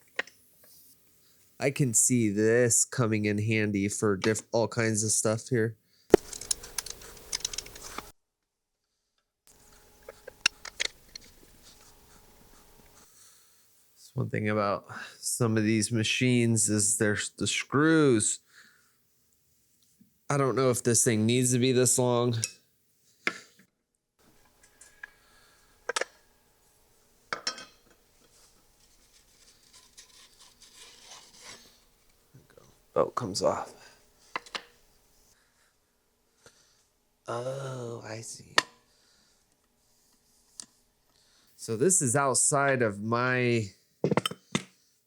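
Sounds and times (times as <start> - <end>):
metal parts clicking and tapping: 6.1 - 8.1
faint steady hum: 9.5 - 19.4, 24.2 - 43.6.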